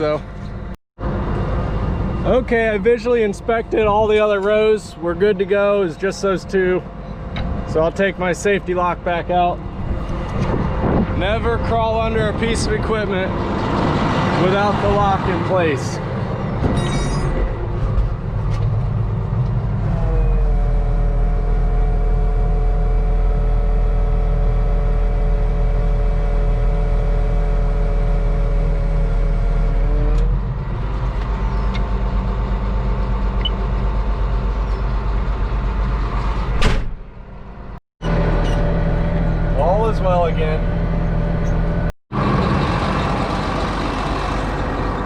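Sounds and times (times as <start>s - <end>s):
tractor engine running: 21.6s - 45.0s.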